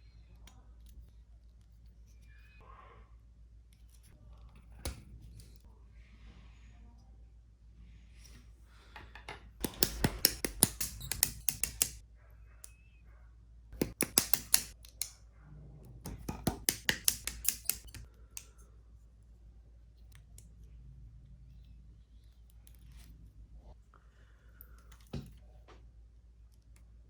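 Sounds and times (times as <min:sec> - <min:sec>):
plastic clicks and snips: 0:09.6 - 0:12.0, 0:13.8 - 0:15.2, 0:16.0 - 0:18.6.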